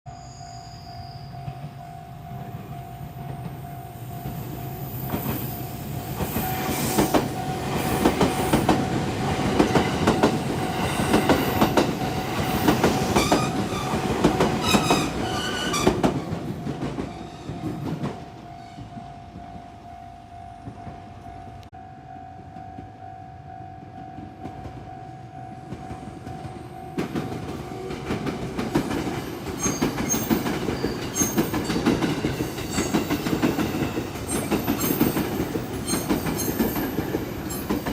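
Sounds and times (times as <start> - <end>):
level-crossing alarm ringing: 0.1 - 28.5.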